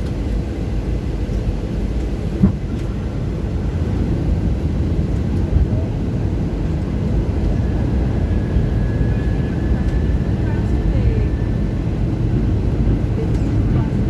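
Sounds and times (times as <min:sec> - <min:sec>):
aircraft engine and airflow rumble: 0:00.0 - 0:14.0.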